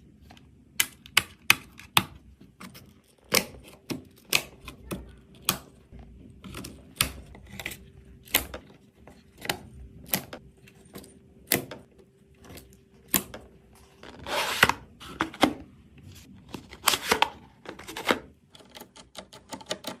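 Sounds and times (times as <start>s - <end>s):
scrape: 14.0s - 15.3s.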